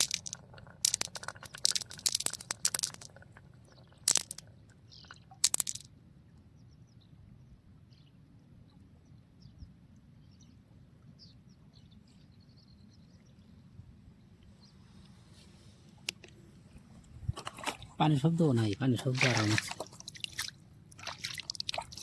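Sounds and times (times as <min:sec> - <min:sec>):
marbles clattering on track: 0:00.0 - 0:04.6, 0:05.3 - 0:05.9.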